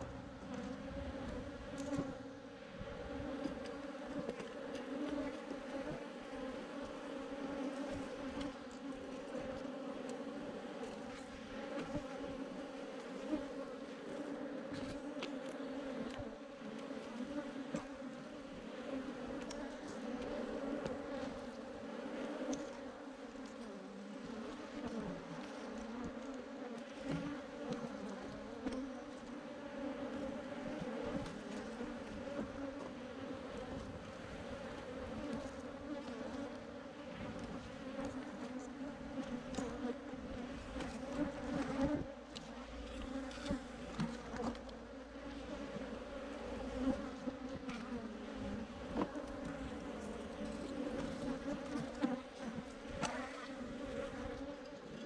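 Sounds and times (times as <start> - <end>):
bees buzzing: 0.0 - 10.8.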